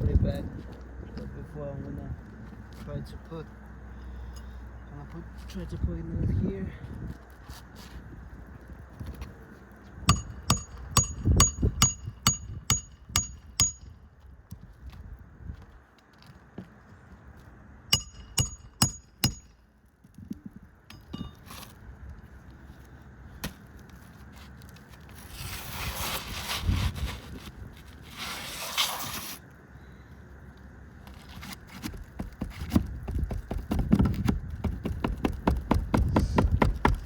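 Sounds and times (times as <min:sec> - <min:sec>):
hammer striking roofing nails: 0:10.1 - 0:13.8, 0:18.0 - 0:19.5, 0:32.2 - 0:37.0
rustling scraping noise: 0:23.8 - 0:29.5, 0:31.0 - 0:32.7.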